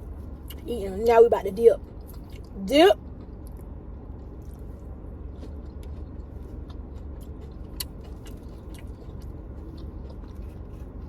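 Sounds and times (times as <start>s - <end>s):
steady low rumble: 0.0s - 11.0s
close-up chewing with mouth clicks: 4.4s - 11.0s.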